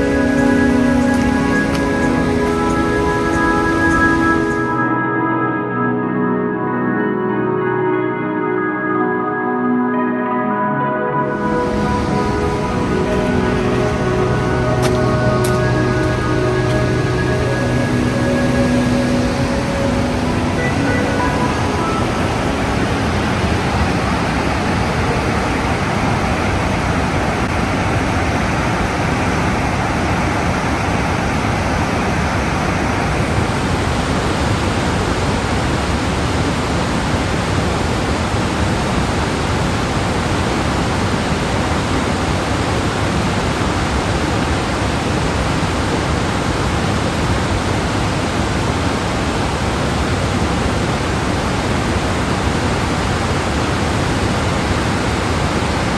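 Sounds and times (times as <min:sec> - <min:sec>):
waterfall rushing: 0:00.0 - 0:04.8, 0:11.3 - 0:55.9
background music: 0:00.0 - 0:24.3.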